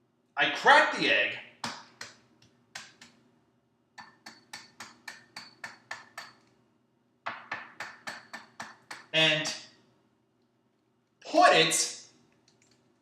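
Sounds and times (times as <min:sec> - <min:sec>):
egg tapping on bowl rim: 0:04.0 - 0:06.4, 0:07.3 - 0:09.1.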